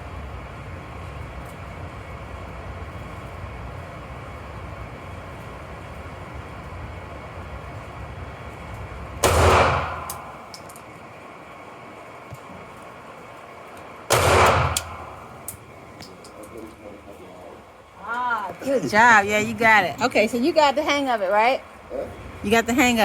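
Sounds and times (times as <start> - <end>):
low background noise: 0.0 - 23.0
loud handgun shot: 9.2 - 10.6, 14.1 - 15.6.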